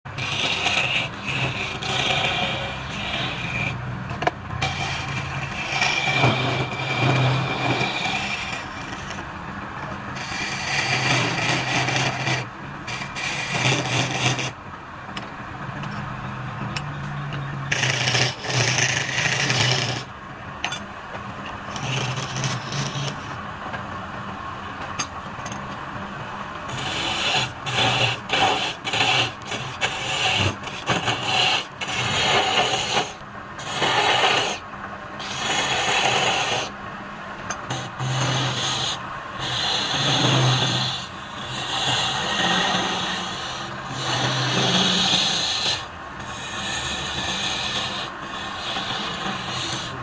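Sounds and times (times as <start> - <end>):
tool scraping spinning wood: 0.0 - 14.6, 16.7 - 20.8, 21.5 - 23.4, 26.7 - 34.6, 35.2 - 36.8, 37.4 - 50.0
wood lathe humming: 0.1 - 9.2, 10.2 - 14.6, 17.7 - 20.1, 21.7 - 23.3, 26.7 - 34.6, 35.2 - 36.7, 37.4 - 50.0.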